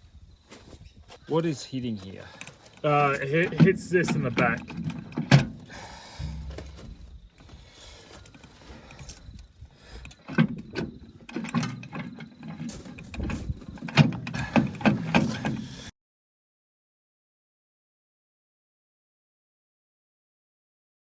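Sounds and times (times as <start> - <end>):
metal knocks and clunks: 2.9 - 7.6, 10.2 - 15.7.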